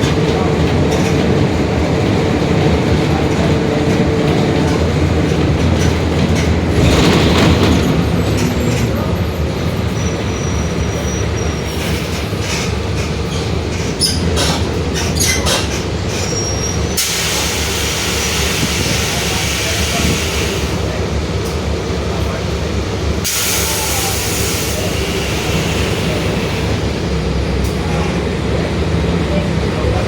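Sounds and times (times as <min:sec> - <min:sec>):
bus engine running: 0:00.0 - 0:30.0
body rattles and clicks: 0:12.1 - 0:16.3.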